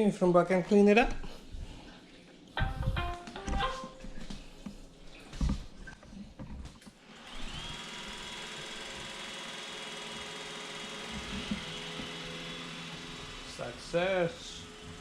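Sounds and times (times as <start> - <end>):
robot vacuum motor whine: 7.1 - 15.0.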